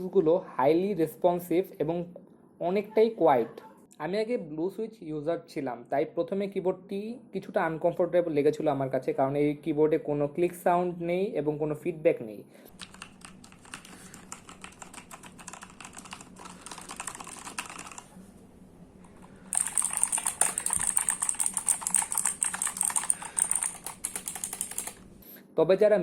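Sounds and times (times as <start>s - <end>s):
rapid mechanical keyboard typing: 12.7s - 18.2s, 19.2s - 25.1s.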